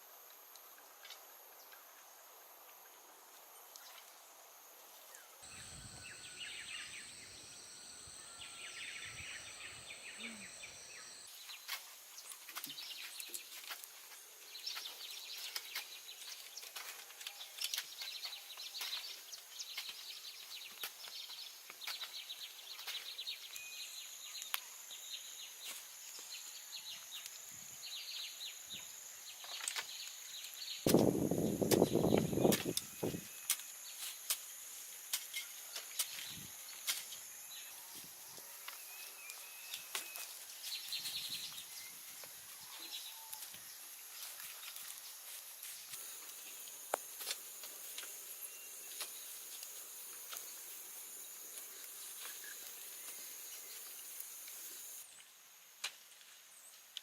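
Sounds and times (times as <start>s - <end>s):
bird chirps: 5.2s - 13.6s
insects shrilling: 5.4s - 16.9s, 17.5s - 55.1s
small clicks and ticks: 5.5s - 23.6s.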